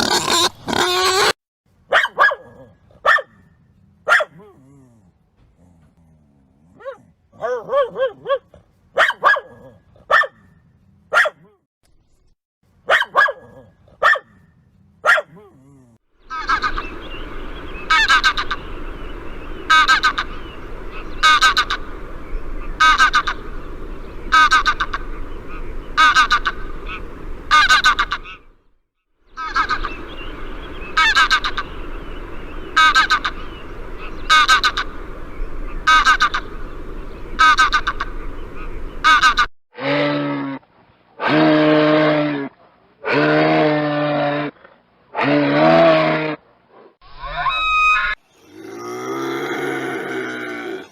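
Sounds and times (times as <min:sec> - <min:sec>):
duck calling: 0:00.0 - 0:01.4, 0:16.3 - 0:17.0, 0:17.9 - 0:18.7, 0:19.7 - 0:21.8, 0:22.8 - 0:23.4, 0:24.3 - 0:28.4, 0:29.4 - 0:30.0, 0:31.0 - 0:31.7, 0:32.8 - 0:35.0, 0:35.8 - 0:36.5, 0:37.4 - 0:40.0.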